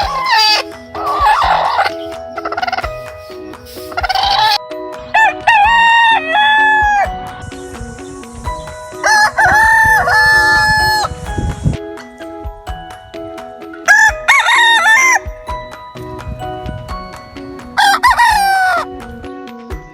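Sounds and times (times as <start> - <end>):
rooster crowing: 5.2 - 7.1, 9.0 - 11.2, 13.9 - 15.3.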